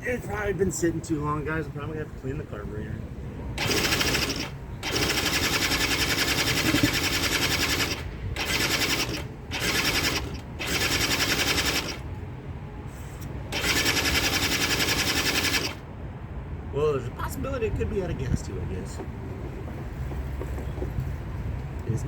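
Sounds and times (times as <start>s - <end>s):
engine cranking without starting: 3.6s - 12.2s, 13.4s - 15.9s.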